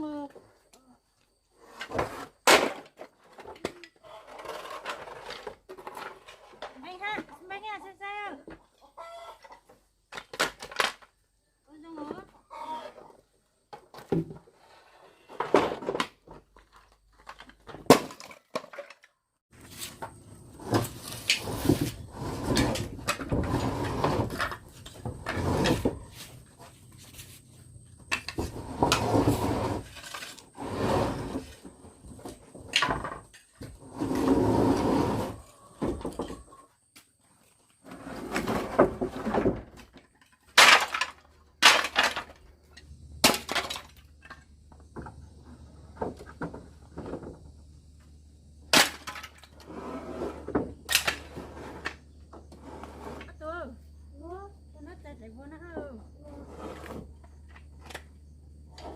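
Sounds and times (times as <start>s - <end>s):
scraping or rustling: 1.6s - 7.6s, 19.5s - 36.6s, 37.2s - 42.7s, 49.0s - 53.5s, 56.2s - 58.1s.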